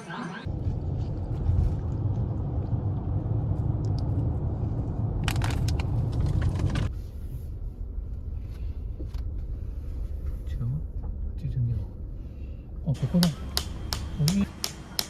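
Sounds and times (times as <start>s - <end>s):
vehicle rumble: 0.4s - 15.0s.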